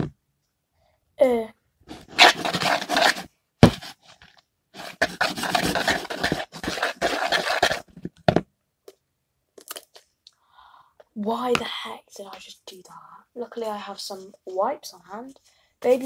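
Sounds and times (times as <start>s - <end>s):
slime scraping and rubbing in bowl: 1.9s - 4.2s, 4.8s - 8.0s.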